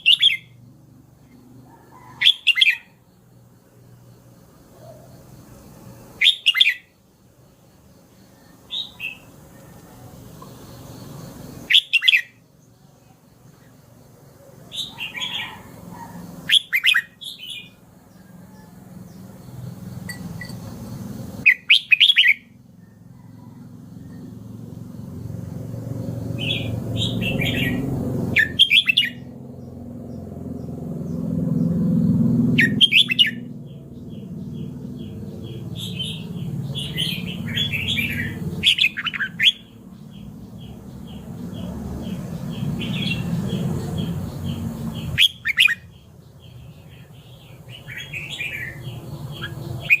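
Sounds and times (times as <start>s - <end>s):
bird singing warbled phrases: 0.0s - 3.0s, 6.1s - 7.0s, 8.6s - 10.7s, 11.5s - 12.8s, 14.5s - 17.8s, 21.4s - 22.6s, 26.0s - 31.3s, 32.5s - 50.0s.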